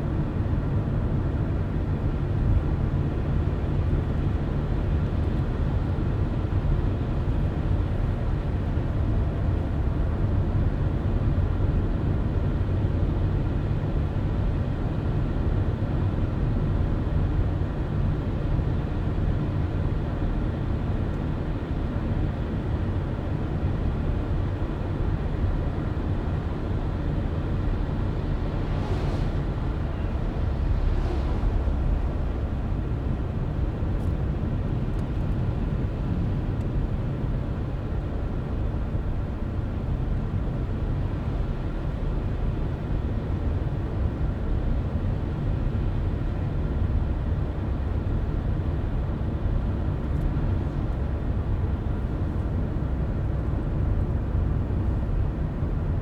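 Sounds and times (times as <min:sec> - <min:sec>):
car engine and road rumble: 0:00.0 - 0:56.0.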